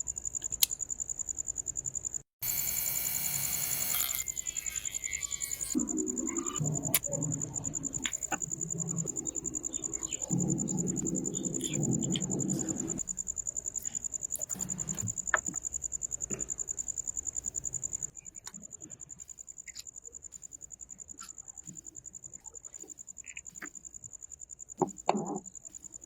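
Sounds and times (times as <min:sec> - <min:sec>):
insect high trill: 0:00.0 - 0:18.2.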